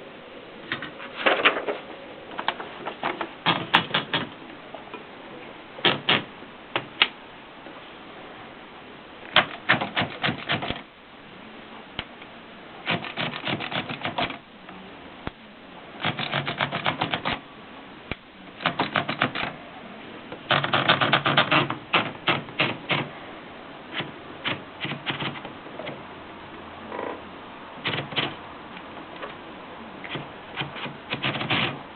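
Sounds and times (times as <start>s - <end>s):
typewriter key strikes: 3.4s - 4.3s, 5.8s - 6.3s, 9.4s - 10.8s, 12.9s - 14.4s, 16.0s - 17.4s, 18.6s - 19.6s, 20.5s - 23.1s, 24.0s - 25.4s, 27.8s - 28.4s, 30.1s - 31.8s.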